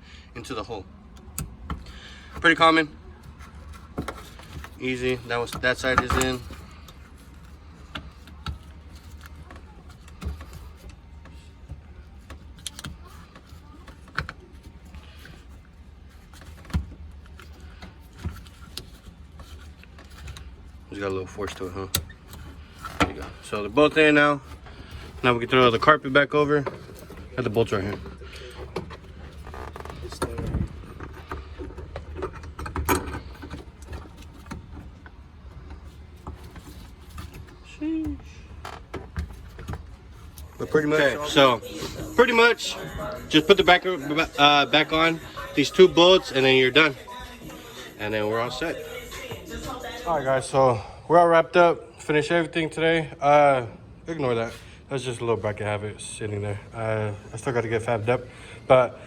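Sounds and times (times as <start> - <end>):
steady low hum: 0.0 - 59.0
clicks and knocks of car parts: 1.1 - 2.6, 3.2 - 25.9, 26.5 - 40.5.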